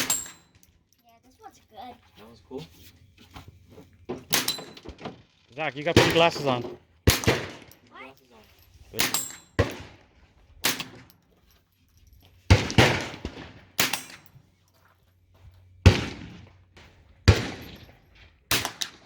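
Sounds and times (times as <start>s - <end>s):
rifle shots with echo: 4.3s - 5.1s, 5.8s - 7.8s, 9.0s - 11.1s, 12.5s - 14.3s, 15.8s - 19.0s.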